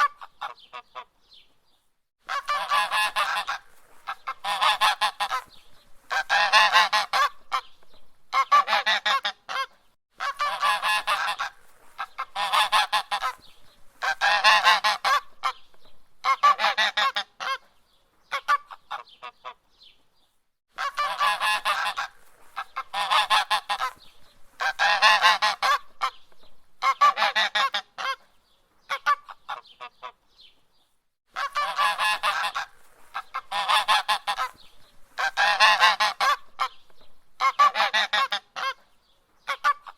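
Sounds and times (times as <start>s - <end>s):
goose honking: 2.3s - 5.5s, 6.1s - 7.6s, 8.3s - 15.6s, 16.2s - 17.6s, 20.8s - 26.2s, 26.8s - 28.2s, 31.4s - 36.8s, 37.4s - 38.8s.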